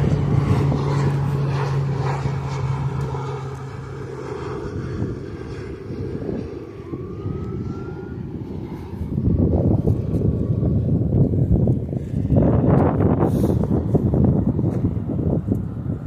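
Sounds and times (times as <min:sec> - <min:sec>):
airplane engine drone: 0:00.0 - 0:16.0.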